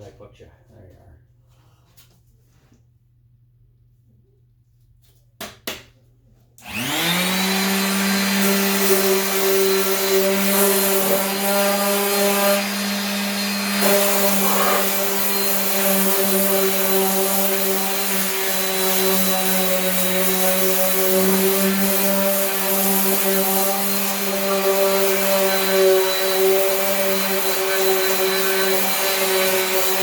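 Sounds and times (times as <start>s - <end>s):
power sander humming: 6.6s - 30.0s.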